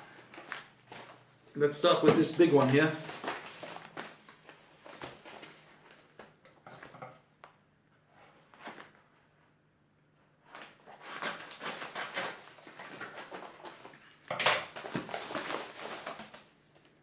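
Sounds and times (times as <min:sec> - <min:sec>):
packaging rustling and crinkling: 0:00.0 - 0:07.0, 0:10.4 - 0:17.0.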